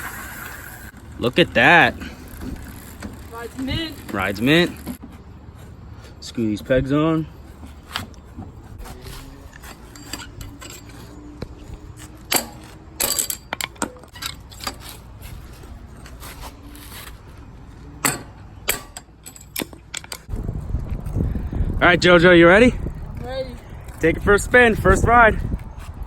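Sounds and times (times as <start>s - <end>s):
metal clinks and scrapes: 8.8s - 17.3s, 17.9s - 20.3s.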